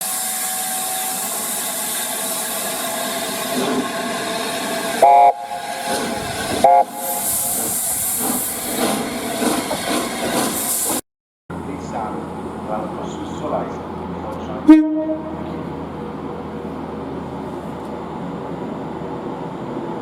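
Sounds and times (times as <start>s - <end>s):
passing train hiss: 0.0s - 11.0s
train horn blasts: 5.0s - 7.5s, 14.6s - 15.6s.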